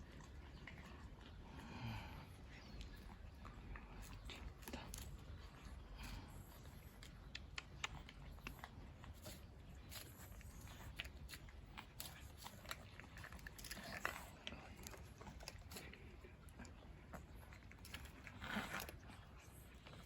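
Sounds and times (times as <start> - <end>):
cats chewing dry food: 0.0 - 20.0.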